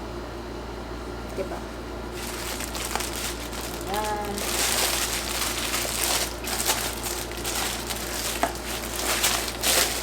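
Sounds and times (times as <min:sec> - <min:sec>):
packaging rustling and crinkling: 0:02.1 - 0:10.0.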